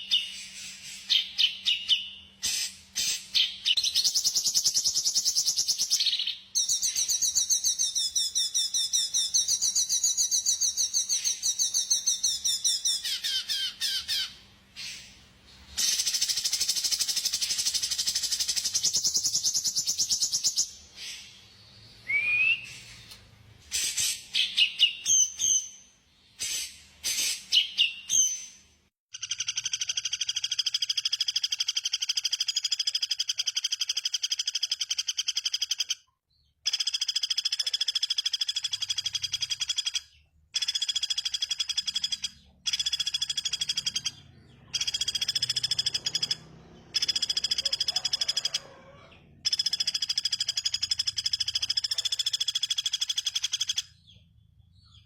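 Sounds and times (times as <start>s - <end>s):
bird whistles and chirps: 15.8s - 25.8s
buzzy bird trill: 36.6s - 54.2s
songbird trilling: 40.6s - 48.7s.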